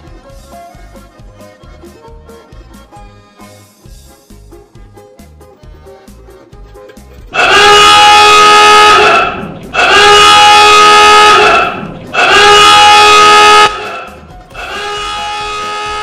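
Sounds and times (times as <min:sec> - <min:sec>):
horn blasts: 0:07.3 - 0:16.0.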